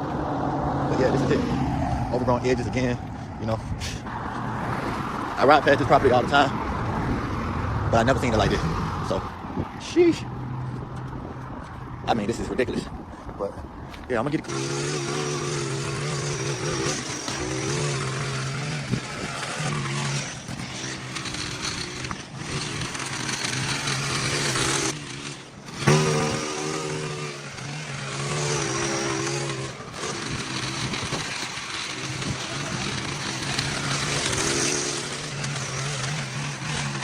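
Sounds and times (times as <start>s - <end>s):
small gasoline engine running: 14.1s - 37.0s.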